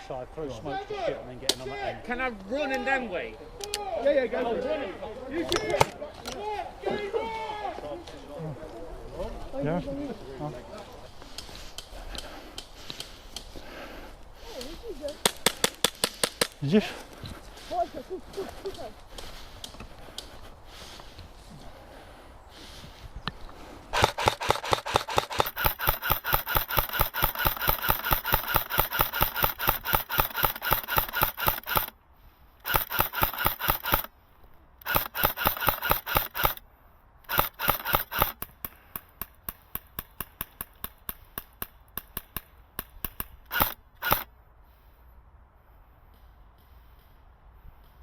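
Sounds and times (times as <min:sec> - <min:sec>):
airsoft rifle firing bursts: 0:24.0 - 0:31.9, 0:32.6 - 0:34.1, 0:34.8 - 0:36.6, 0:37.3 - 0:38.5, 0:43.0 - 0:44.3.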